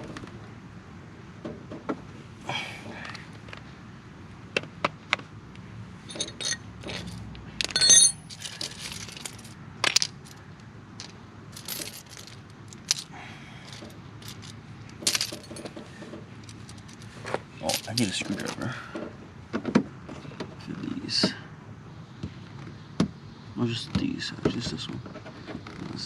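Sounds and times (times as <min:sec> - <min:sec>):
metal hardware clicking: 0:06.1 - 0:10.4
metallic jingle: 0:06.1 - 0:10.4, 0:11.6 - 0:15.7, 0:17.6 - 0:18.6.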